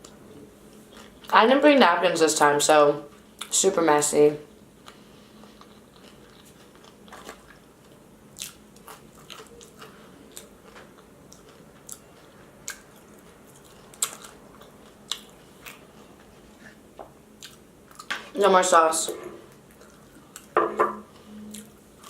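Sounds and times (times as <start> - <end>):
chewing with crunches: 4.8 - 18.3, 19.5 - 22.0.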